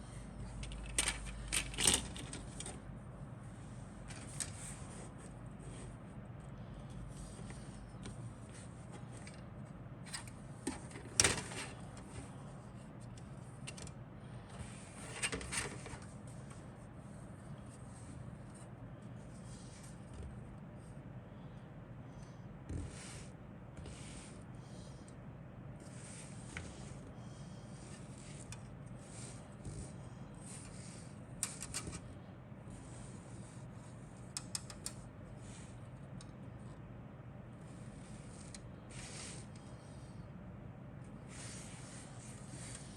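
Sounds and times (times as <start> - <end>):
steady low hum: 0.0 - 42.9
plastic parts clicking and rustling: 0.5 - 2.8, 10.1 - 11.8.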